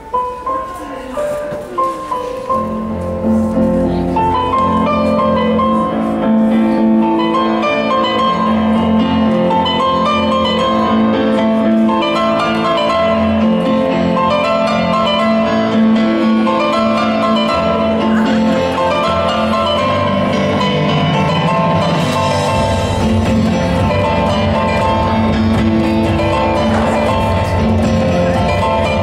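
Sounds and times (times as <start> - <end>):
instrumental dance music: 0.0 - 29.0.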